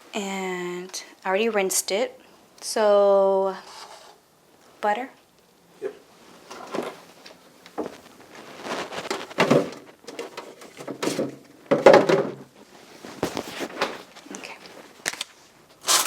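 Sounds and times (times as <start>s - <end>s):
kitchen items knocking and rattling: 8.8s - 12.6s.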